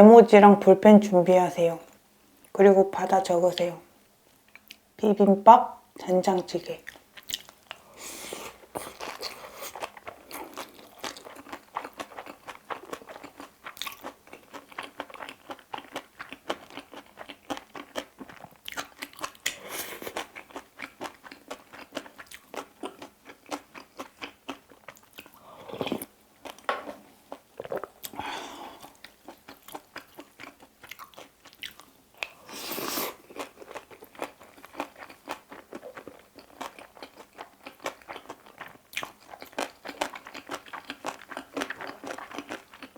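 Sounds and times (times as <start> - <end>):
crunchy chewing close up: 6.8 - 7.9, 8.5 - 26.7, 28.8 - 42.9.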